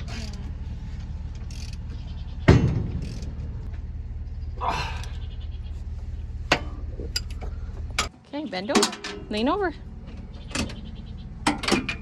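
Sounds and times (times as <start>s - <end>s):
tractor engine idling: 0.0s - 12.0s
brief vocal cry: 4.6s - 5.2s.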